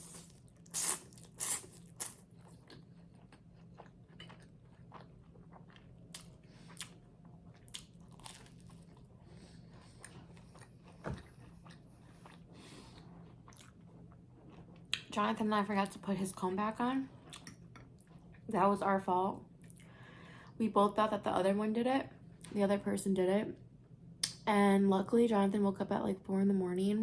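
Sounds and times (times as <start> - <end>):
crackly chewing: 0.0 - 15.1, 17.1 - 18.5
crunchy bread bites: 7.6 - 9.1.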